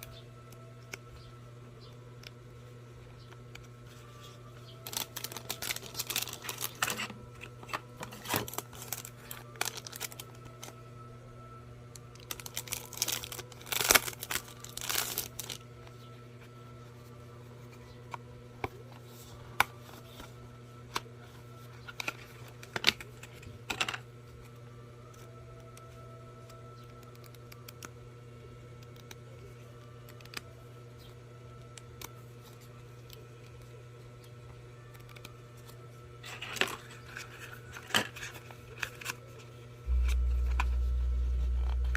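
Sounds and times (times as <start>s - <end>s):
plastic packaging crinkling and tearing: 4.7s - 10.8s, 12.2s - 15.6s.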